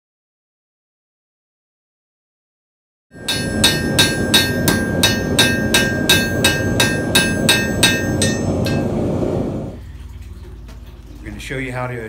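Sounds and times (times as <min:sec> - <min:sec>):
hammer ringing on anvil: 0:03.2 - 0:09.2
low rushing noise: 0:03.2 - 0:09.8.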